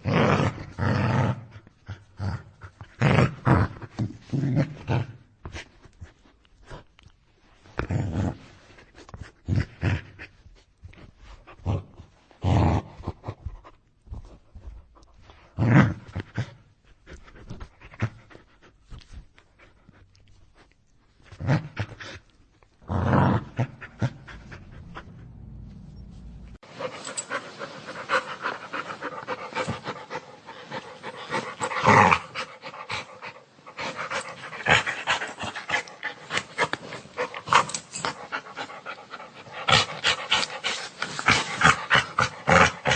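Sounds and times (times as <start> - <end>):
dog growling: 22.8 - 26.9.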